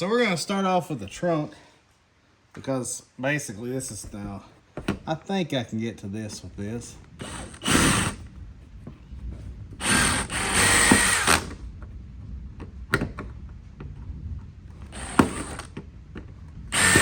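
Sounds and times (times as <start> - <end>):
power drill running: 7.2 - 8.3, 9.8 - 11.6, 14.9 - 15.7, 16.7 - 17.0.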